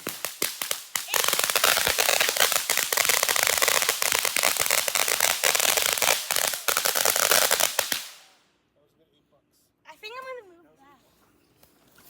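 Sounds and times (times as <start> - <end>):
firework crackling and popping: 0.0 - 8.4.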